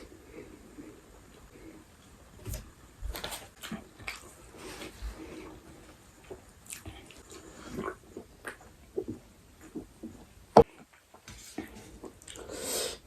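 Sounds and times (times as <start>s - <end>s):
person chewing food: 6.2s - 11.1s.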